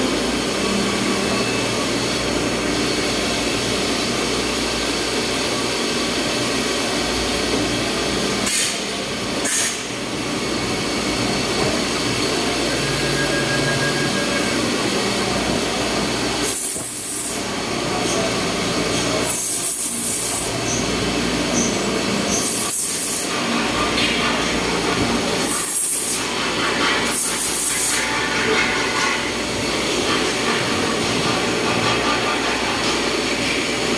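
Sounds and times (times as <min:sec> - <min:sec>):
milling machine running: 0:10.0 - 0:17.8, 0:22.0 - 0:33.9.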